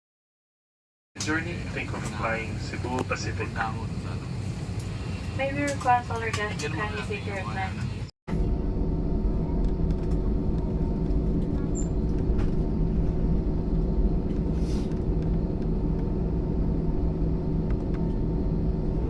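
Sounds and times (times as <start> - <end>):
airplane engines rumbling in cabin: 1.2 - 19.0
faint steady whine: 1.2 - 19.0.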